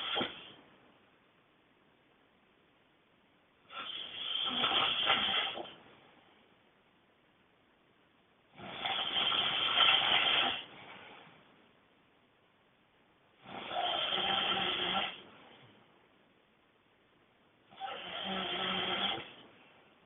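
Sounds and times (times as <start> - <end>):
person snoring loudly: 3.7 - 5.8, 8.6 - 10.7, 13.4 - 15.2, 17.7 - 19.4.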